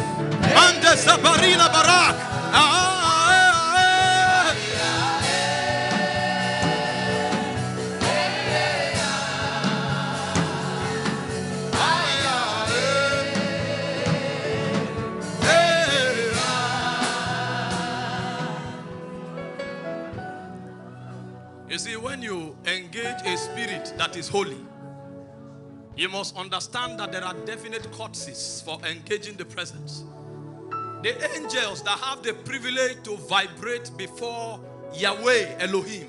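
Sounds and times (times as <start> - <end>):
instrumental backing: 0.0 - 28.7.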